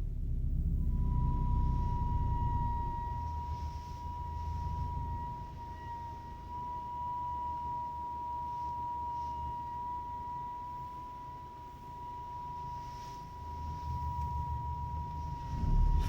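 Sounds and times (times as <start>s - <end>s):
low car rumble: 0.0s - 7.8s, 11.3s - 16.0s.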